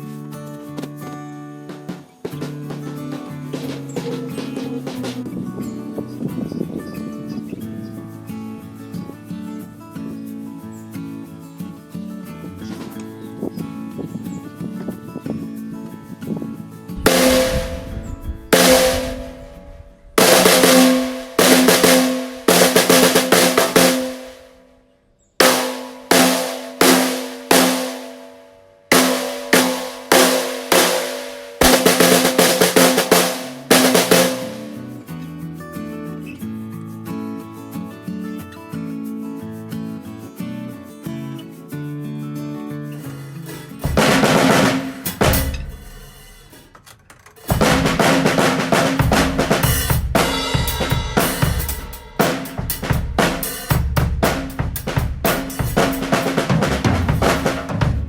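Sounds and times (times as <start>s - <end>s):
snare drum strokes ringing: 17.0s - 24.5s, 25.4s - 34.9s, 43.9s - 46.5s, 47.5s - 58.0s.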